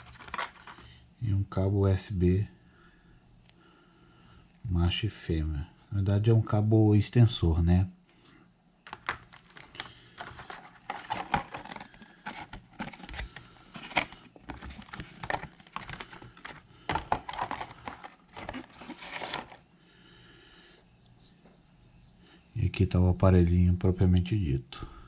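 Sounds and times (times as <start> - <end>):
packaging crinkling and rustling: 0.0 - 0.9, 8.8 - 19.7.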